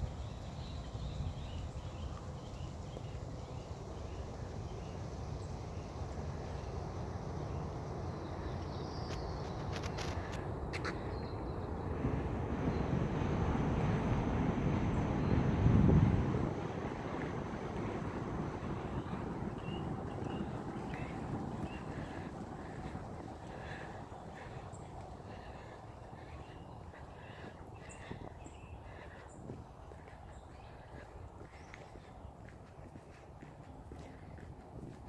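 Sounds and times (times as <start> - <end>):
wind rumble on microphone: 0.0 - 35.0
faint bird calls: 18.8 - 34.5.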